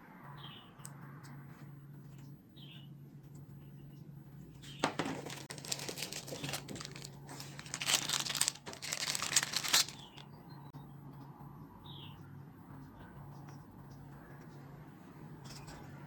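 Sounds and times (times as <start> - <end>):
crinkling and rustling handling noise: 4.6 - 10.2.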